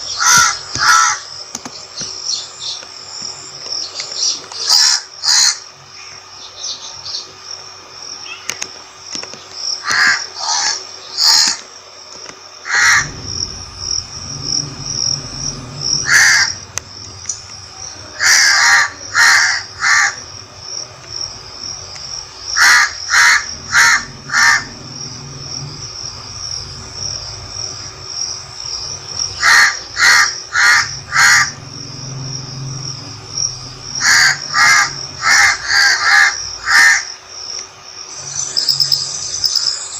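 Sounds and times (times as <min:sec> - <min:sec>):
high-pitched insect drone: 0:00.0 - 0:39.9
crows cawing: 0:00.1 - 0:01.3, 0:04.6 - 0:05.6, 0:09.8 - 0:11.6, 0:12.6 - 0:13.6, 0:15.7 - 0:16.8, 0:17.8 - 0:20.4, 0:22.5 - 0:24.8, 0:29.3 - 0:31.6, 0:33.9 - 0:37.2.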